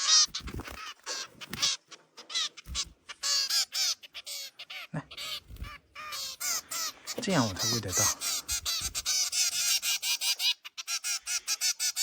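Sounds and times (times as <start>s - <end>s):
fledgling birds begging calls: 0.0s - 12.0s.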